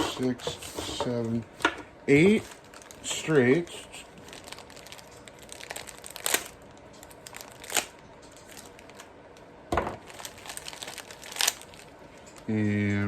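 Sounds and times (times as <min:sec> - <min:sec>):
plastic wrapping crinkling: 0:02.1 - 0:13.0.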